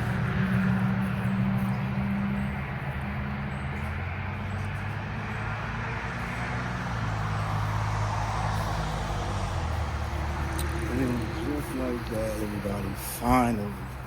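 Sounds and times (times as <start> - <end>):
vehicle engine humming: 0.0 - 14.0
steady rushing hiss: 7.2 - 14.0.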